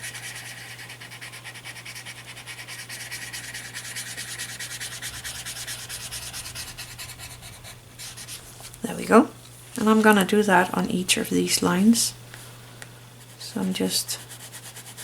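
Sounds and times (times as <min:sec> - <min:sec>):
paper stump rubbing drawing paper: 0:00.0 - 0:08.8.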